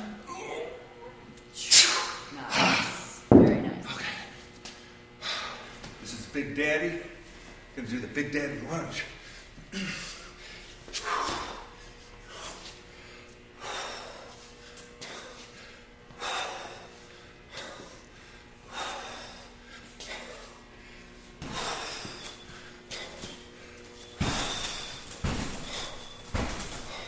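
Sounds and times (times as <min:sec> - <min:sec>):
man breathing hard: 0:04.0 - 0:05.8, 0:09.1 - 0:26.0, 0:26.6 - 0:27.0.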